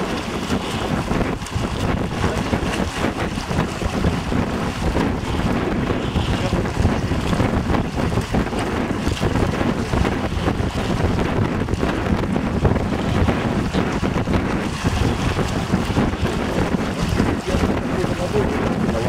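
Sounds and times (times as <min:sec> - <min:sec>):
wind buffeting microphone: 0:00.0 - 0:19.0.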